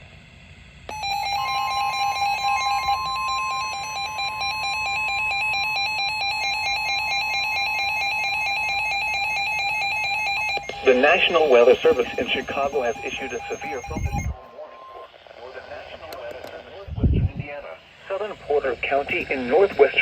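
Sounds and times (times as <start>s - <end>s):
rapid electronic beeping: 0.9s - 15.8s
steady weather radio warning tone: 0.9s - 20.0s.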